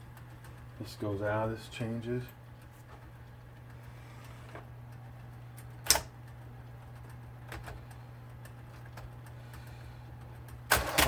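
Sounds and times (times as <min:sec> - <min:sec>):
electric typewriter motor humming: 0:05.5 - 0:11.0.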